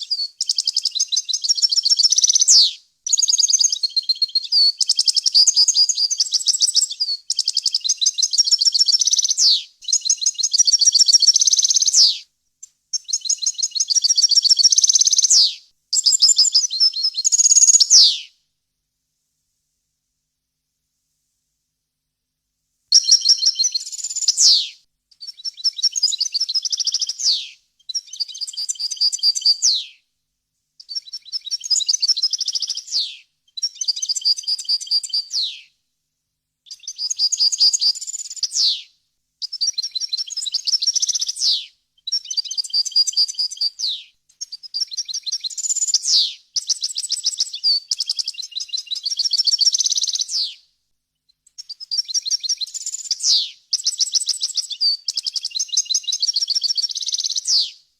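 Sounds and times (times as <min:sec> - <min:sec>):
finch singing: 0:12.9 - 0:18.3, 0:23.0 - 0:29.8.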